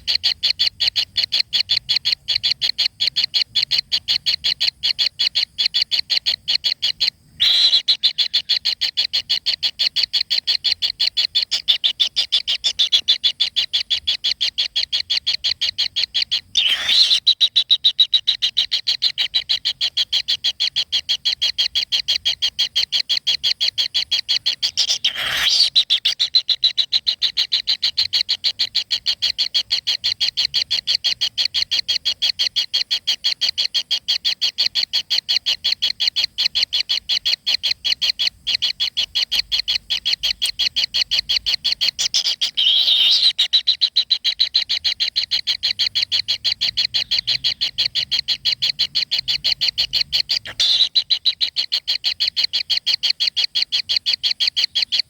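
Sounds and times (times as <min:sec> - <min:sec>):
bird chirping rapidly: 0:06.8 - 0:20.6, 0:23.2 - 0:30.9, 0:34.6 - 0:55.0.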